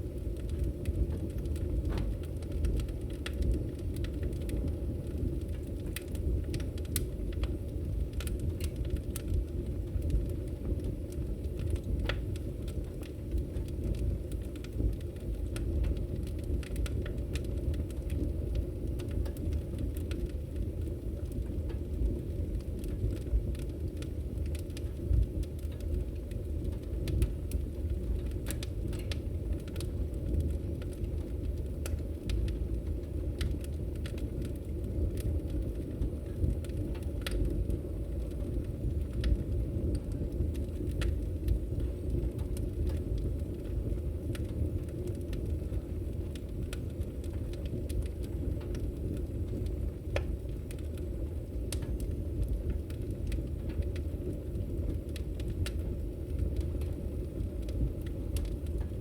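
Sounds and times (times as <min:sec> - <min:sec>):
fire crackling in a fireplace: 0:00.0 - 0:59.0.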